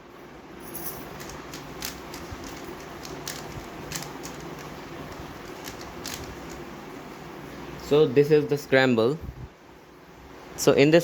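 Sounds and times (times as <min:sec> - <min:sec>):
steady background hiss: 0:00.0 - 0:11.0
puzzle cube layers clicking: 0:01.2 - 0:06.6.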